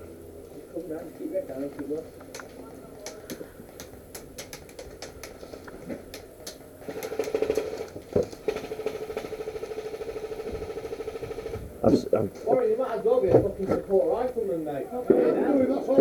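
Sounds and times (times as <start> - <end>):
airsoft gun full auto rattle: 3.8 - 11.6.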